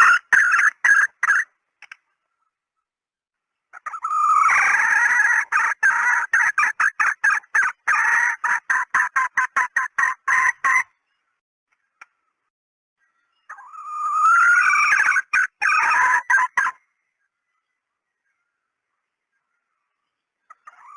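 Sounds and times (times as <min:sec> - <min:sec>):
hen cackling and clucking: 0:00.0 - 0:01.5, 0:03.7 - 0:11.0, 0:13.5 - 0:16.8, 0:20.5 - 0:20.9.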